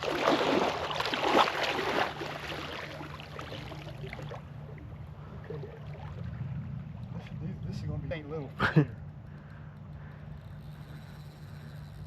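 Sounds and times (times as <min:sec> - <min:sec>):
water splashing around boat: 0:00.0 - 0:07.8
steady low hum: 0:00.0 - 0:12.0.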